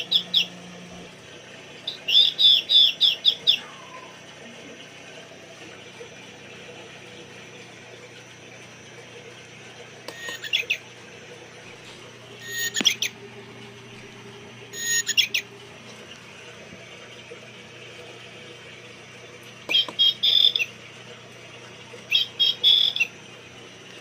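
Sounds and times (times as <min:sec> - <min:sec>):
recorded birdsong from small speaker: 0:00.0 - 0:00.8, 0:01.8 - 0:04.6, 0:10.1 - 0:10.9, 0:12.4 - 0:13.2, 0:14.8 - 0:15.5, 0:19.7 - 0:20.8, 0:22.1 - 0:23.2.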